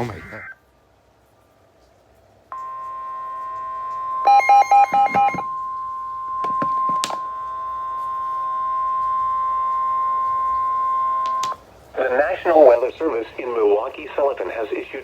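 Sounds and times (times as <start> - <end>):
steady electronic alarm tone: 2.5 - 11.6.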